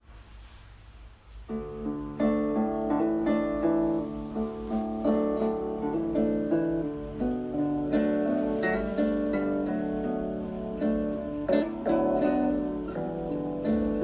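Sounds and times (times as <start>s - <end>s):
faint hiss: 0.0s - 14.0s
soft plucked melody: 1.5s - 14.0s.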